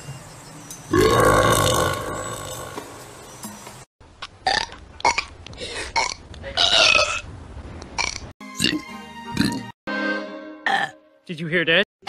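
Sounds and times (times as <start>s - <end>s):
cartoon character burping: 10.7s - 11.0s.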